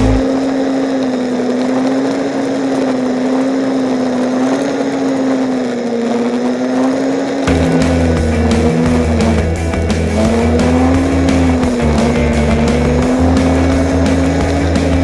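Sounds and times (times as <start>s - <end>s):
atv engine cruising: 0.0s - 15.0s.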